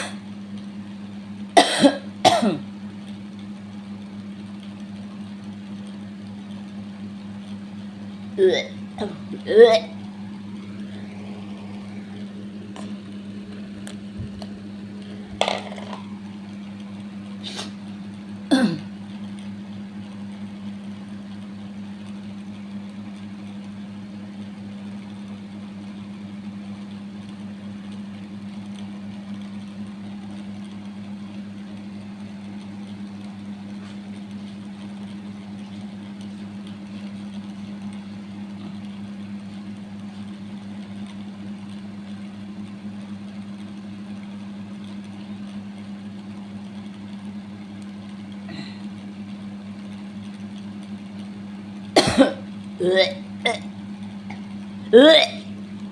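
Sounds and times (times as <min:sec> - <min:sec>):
steady mechanical hum: 0:00.0 - 0:55.9.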